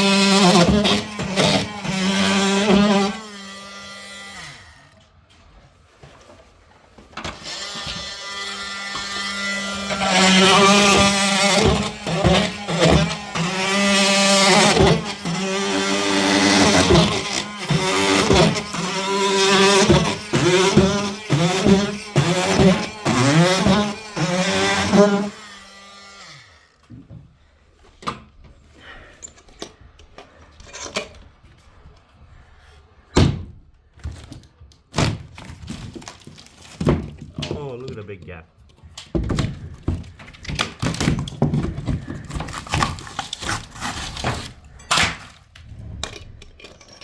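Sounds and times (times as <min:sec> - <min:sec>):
plaster scraping: 0:05.4 - 0:25.4, 0:39.2 - 0:47.0
oscillating multi-tool buzzing: 0:07.4 - 0:26.8.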